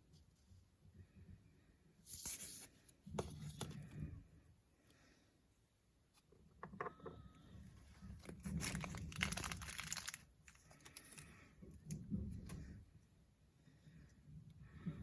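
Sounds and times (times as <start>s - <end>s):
plastic packaging crinkling: 8.0s - 11.4s.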